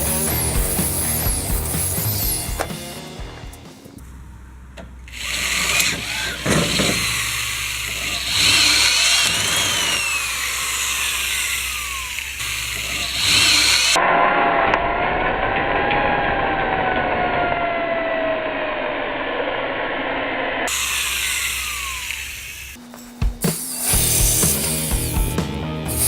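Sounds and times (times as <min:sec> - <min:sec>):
power tool grinding metal: 0:00.0 - 0:03.6, 0:05.2 - 0:14.0, 0:23.4 - 0:26.0
dull whine falling in pitch: 0:00.0 - 0:26.0.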